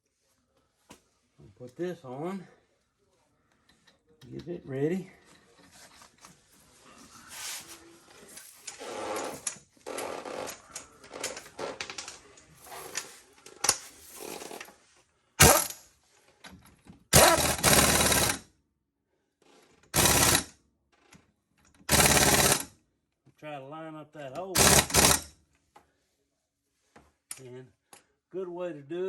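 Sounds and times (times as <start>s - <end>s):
impact wrench hammering: 15.4s - 15.8s, 17.2s - 18.4s, 20.0s - 20.5s, 21.9s - 22.6s, 24.6s - 25.3s.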